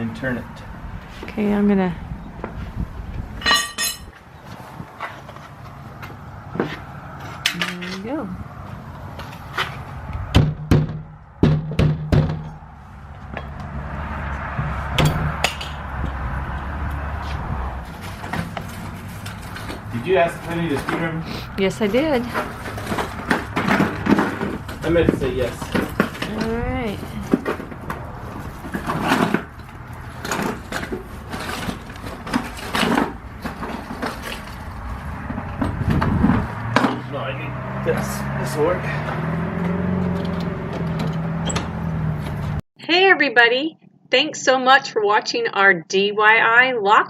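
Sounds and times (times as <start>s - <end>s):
hammer knocking on metal lock: 10.3s - 12.6s
wood scraping and splintering: 13.5s - 42.6s
tools scraping and knocking at lock: 40.0s - 41.8s.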